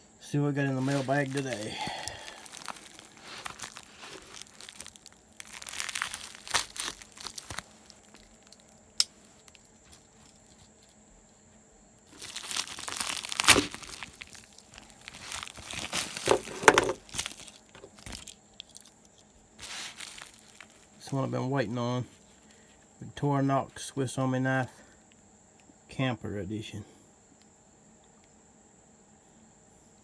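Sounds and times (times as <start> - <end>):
packaging crinkling and tearing: 0.7 - 11.0, 12.1 - 21.0.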